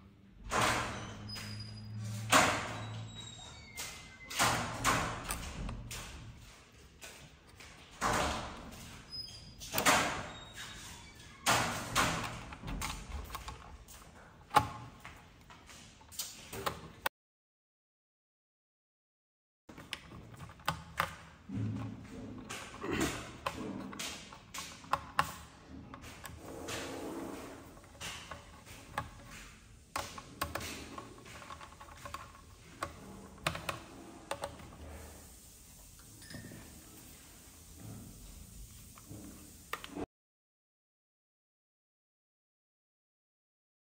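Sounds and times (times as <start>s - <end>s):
computer parts knocking and clattering: 4.2s - 15.5s, 19.7s - 26.4s, 27.6s - 34.8s.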